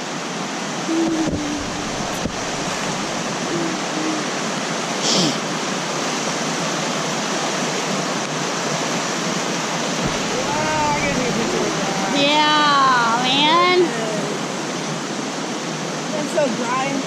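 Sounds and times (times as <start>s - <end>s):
creek water rushing: 0.0s - 17.0s.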